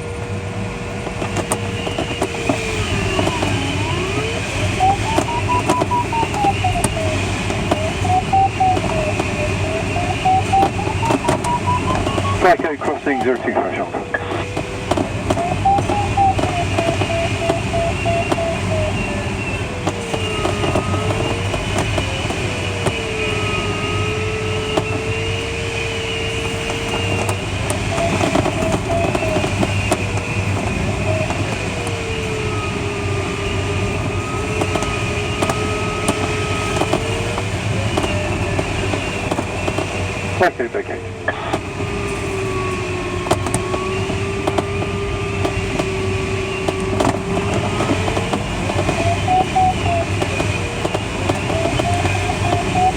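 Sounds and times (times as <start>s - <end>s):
cockpit airflow noise: 0.0s - 52.9s
variometer tone sliding in pitch: 1.2s - 39.2s, 42.0s - 52.9s.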